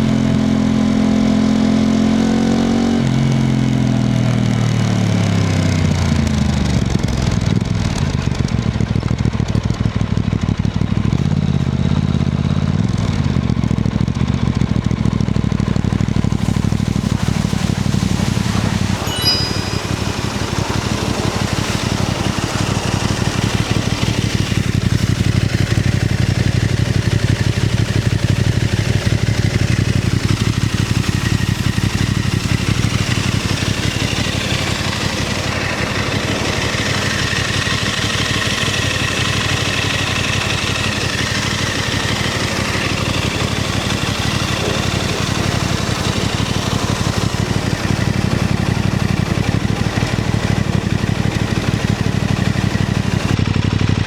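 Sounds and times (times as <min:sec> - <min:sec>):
motorcycle engine idling: 0:06.0 - 0:54.0.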